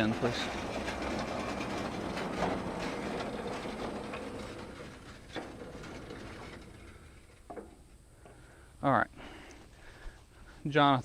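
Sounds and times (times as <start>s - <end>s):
bandsaw mill running: 0.0s - 7.3s.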